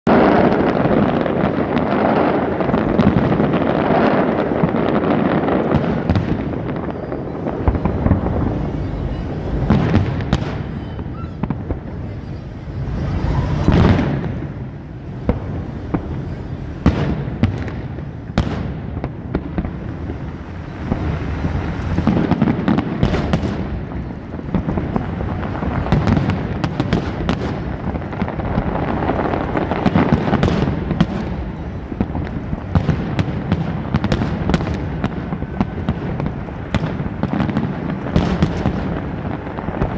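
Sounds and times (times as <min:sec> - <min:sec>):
fireworks bangs and crackles: 0:00.0 - 0:39.9
low rumble of explosions: 0:00.1 - 0:39.9.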